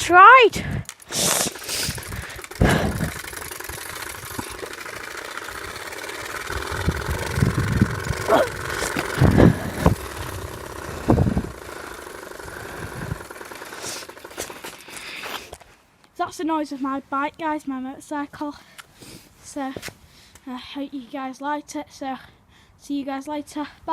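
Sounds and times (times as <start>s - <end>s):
card buzzing against bicycle spokes: 0.0s - 15.7s.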